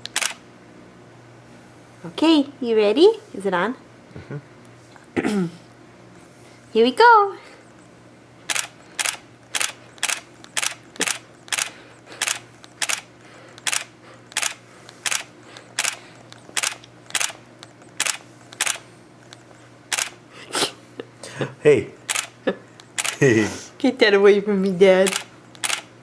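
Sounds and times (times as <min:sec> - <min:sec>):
camera shutter clicking: 0:00.0 - 0:00.4, 0:08.5 - 0:17.4, 0:18.0 - 0:18.8, 0:19.9 - 0:20.2, 0:22.1 - 0:23.2, 0:25.0 - 0:25.9.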